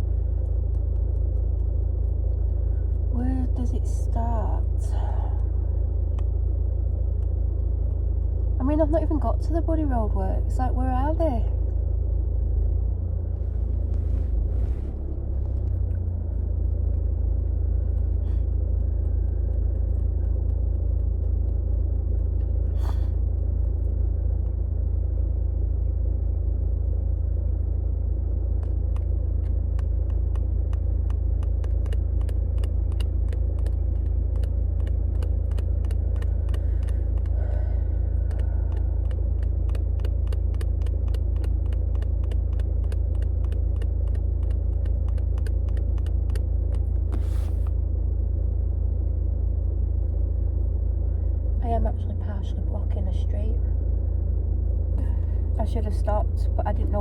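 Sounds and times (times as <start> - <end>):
sharp evenly spaced ticks: 0.0 - 9.9, 15.6 - 25.9, 26.8 - 47.7
car engine idling: 0.0 - 57.0.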